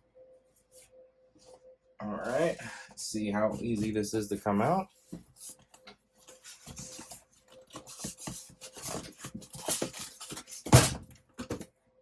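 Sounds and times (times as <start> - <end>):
cardboard and foam rustling: 3.4 - 11.7.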